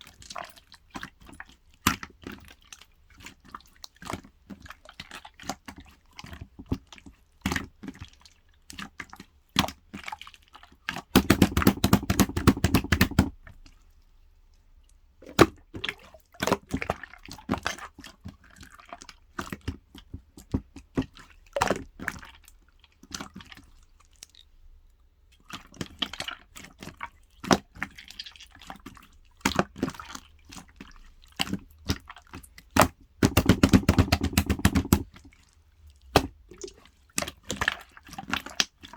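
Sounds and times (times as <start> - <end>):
slime popping and clicking: 11.2 - 13.3, 33.2 - 35.1.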